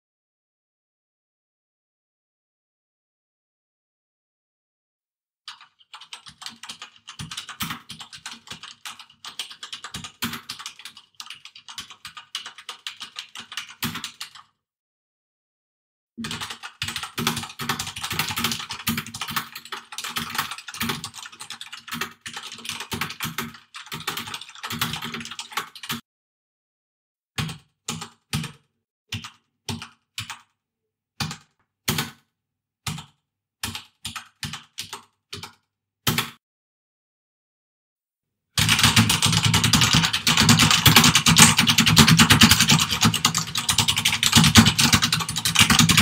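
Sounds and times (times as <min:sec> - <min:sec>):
typing on computer keyboard: 0:05.5 - 0:14.5, 0:16.2 - 0:26.0, 0:27.4 - 0:30.6, 0:31.2 - 0:32.2, 0:32.9 - 0:36.4, 0:38.6 - 0:46.0.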